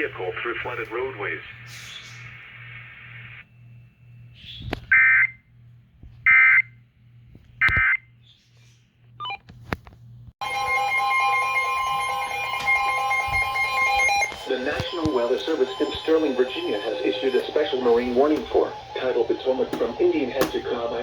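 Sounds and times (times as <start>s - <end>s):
two-tone attention signal: 10.4s - 20.6s
digital header bursts: 14.2s - 21.0s.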